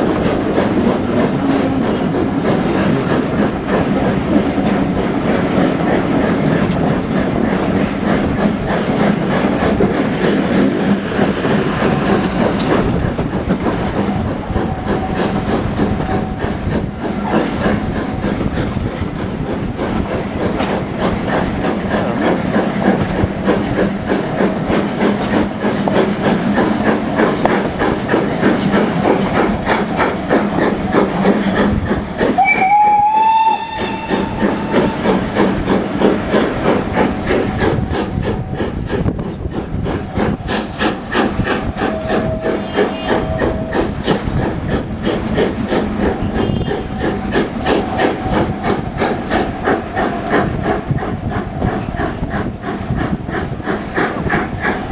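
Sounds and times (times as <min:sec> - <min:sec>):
steam locomotive running: 0:00.0 - 0:54.9
locomotive whistle: 0:32.3 - 0:36.2, 0:41.6 - 0:44.2, 0:46.1 - 0:48.8.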